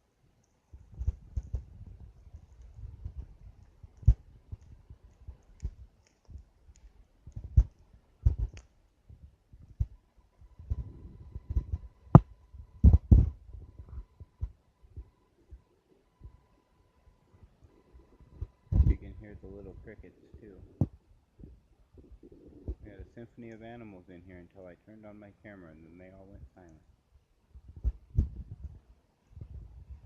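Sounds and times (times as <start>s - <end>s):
low fire rumble: 0.7s - 30.0s
campfire crackling and popping: 1.0s - 8.8s.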